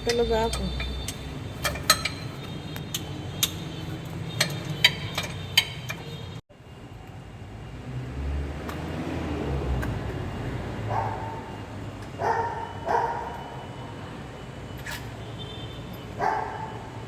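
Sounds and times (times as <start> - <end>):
metallic clicks of hand tools: 0.0 - 3.6, 4.4 - 6.1.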